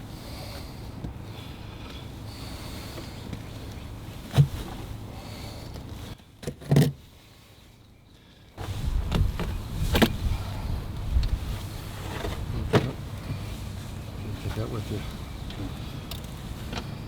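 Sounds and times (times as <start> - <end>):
dull thumps of carpet pulled: 8.6 - 13.4
steady low hum: 8.6 - 17.0.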